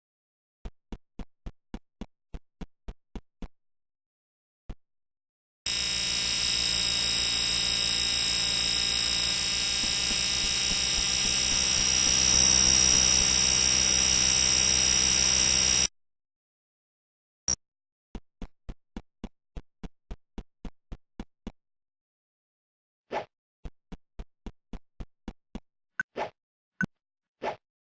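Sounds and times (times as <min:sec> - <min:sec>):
fire alarm steady tone: 0:05.7 - 0:15.9.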